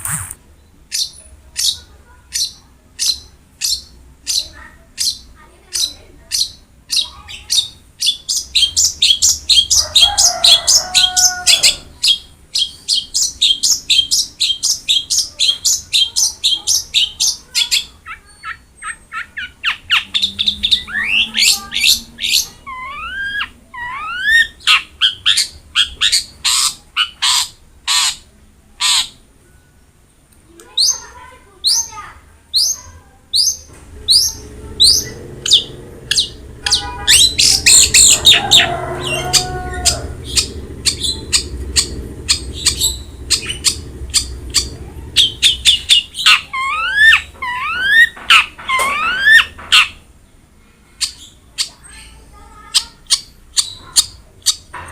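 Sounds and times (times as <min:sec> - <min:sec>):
shrike singing: 0:33.4 - 0:49.6.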